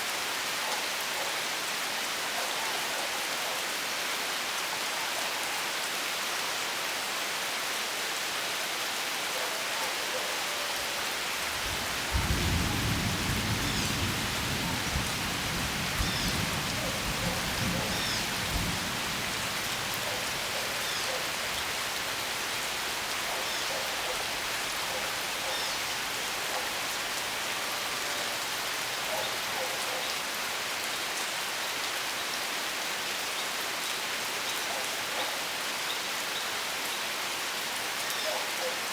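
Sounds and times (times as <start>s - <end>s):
steady rain falling: 0.0s - 38.9s
low thunder rumble: 11.6s - 20.7s.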